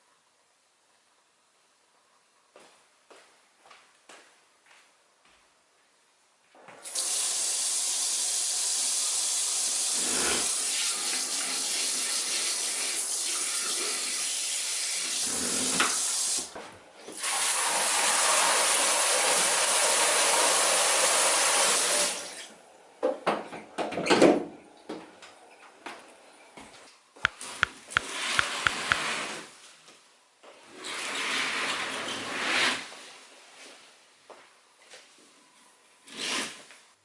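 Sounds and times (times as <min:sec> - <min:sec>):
tap water running into sink: 0:06.8 - 0:16.5.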